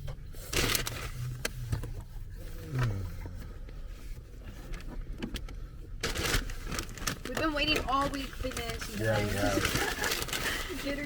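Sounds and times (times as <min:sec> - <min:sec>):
food bag rustling and clicking: 0:06.0 - 0:11.0.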